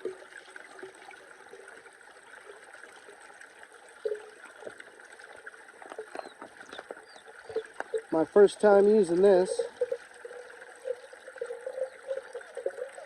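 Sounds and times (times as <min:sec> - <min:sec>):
water trickling: 0:00.0 - 0:13.0.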